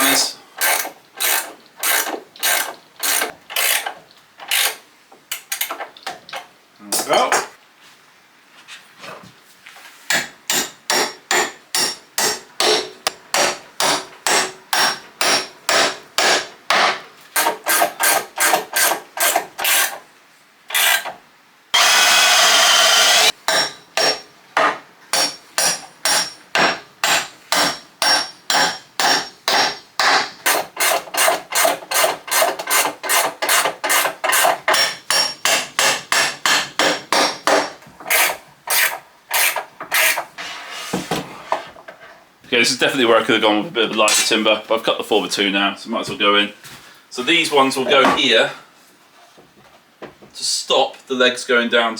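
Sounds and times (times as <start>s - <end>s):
hand saw cutting timber: 0.0s - 4.8s, 17.4s - 20.0s, 20.7s - 21.2s, 27.1s - 40.5s.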